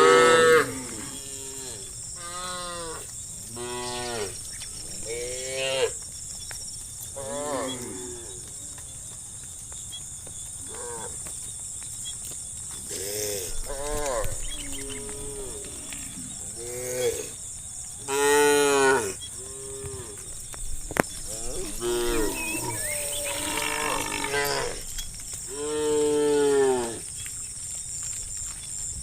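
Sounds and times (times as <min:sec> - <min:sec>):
cows mooing: 0:00.0 - 0:03.0, 0:07.2 - 0:08.4, 0:12.9 - 0:17.4, 0:18.1 - 0:20.2, 0:21.2 - 0:24.9, 0:25.5 - 0:27.0.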